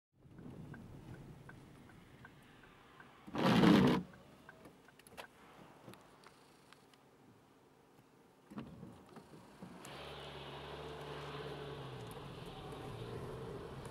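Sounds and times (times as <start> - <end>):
car road noise on wet road: 9.5 - 13.9.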